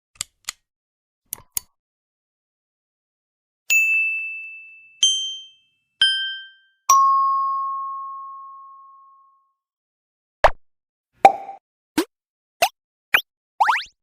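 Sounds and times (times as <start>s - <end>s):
bell-like ding effects: 3.7s - 9.5s.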